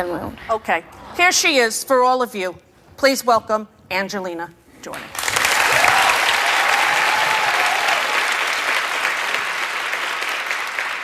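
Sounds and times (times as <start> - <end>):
audience applauding: 5.2 - 11.0.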